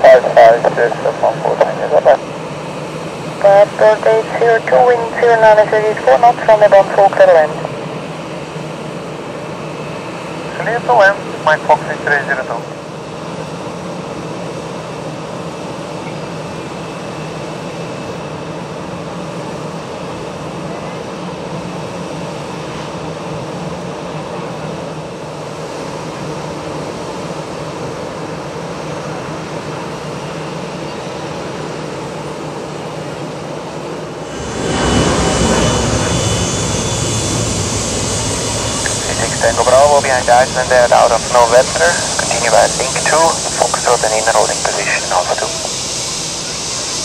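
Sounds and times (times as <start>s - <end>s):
jet engines rushing hum: 0.0s - 47.0s
faint steady tones: 34.7s - 47.0s.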